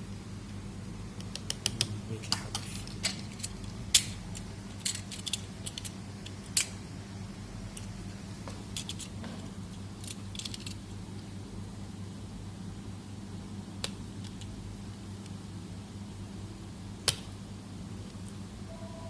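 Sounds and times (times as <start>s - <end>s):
steady low hum: 0.0s - 19.0s
small clicks and taps of parts: 1.2s - 6.8s, 13.8s - 14.5s.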